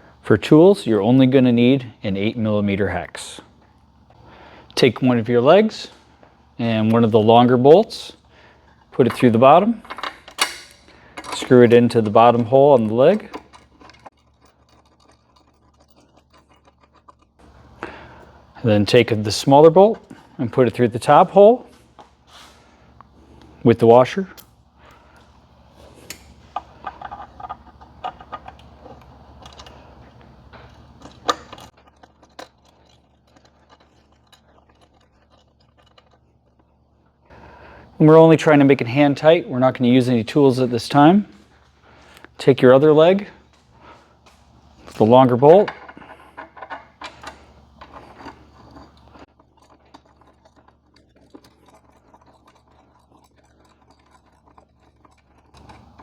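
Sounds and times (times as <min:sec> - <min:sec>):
metal bolts clicking and clinking: 0:08.7 - 0:17.6, 0:25.9 - 0:35.4, 0:44.8 - 0:49.7
bolt and washer clicking and scraping: 0:08.9 - 0:17.1.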